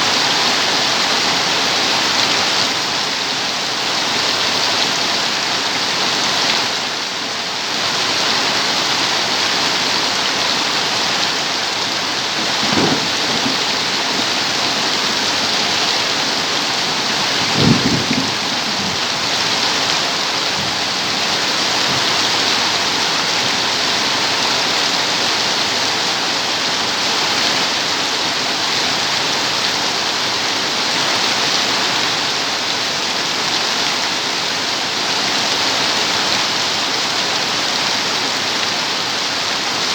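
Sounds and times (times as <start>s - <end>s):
steady rain falling: 0.0s - 39.9s
thunder rumbling: 11.0s - 23.0s.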